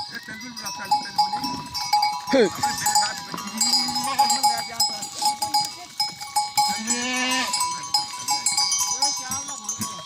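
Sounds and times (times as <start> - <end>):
goat bells clinking: 0.0 - 10.0
goat bleating: 2.5 - 4.5, 6.6 - 7.6.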